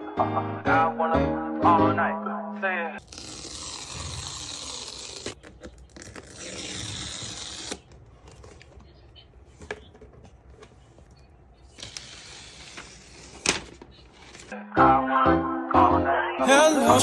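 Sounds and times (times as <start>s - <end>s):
packaging tearing and rustling: 3.0s - 8.5s.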